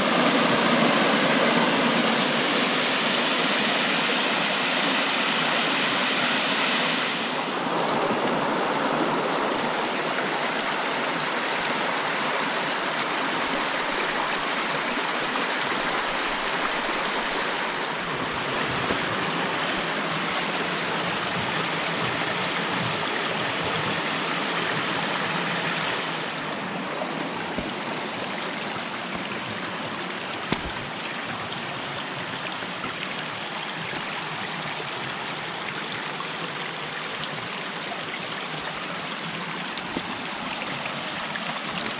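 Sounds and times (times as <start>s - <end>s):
stream water rushing: 0.0s - 41.9s.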